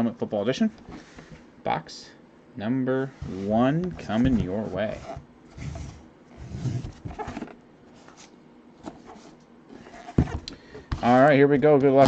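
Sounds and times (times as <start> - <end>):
packaging rustling and scraping: 3.2 - 10.4.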